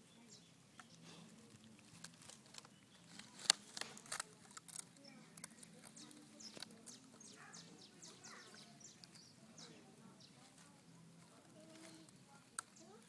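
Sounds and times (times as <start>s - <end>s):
animal gnawing on wood: 0.4s - 9.3s.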